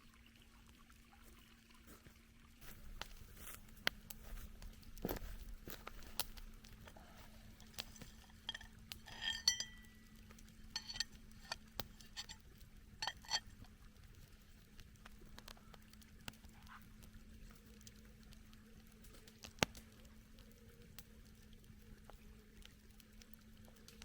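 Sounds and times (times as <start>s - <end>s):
cookware clinking and knocking: 8.3s - 9.9s, 10.8s - 11.1s.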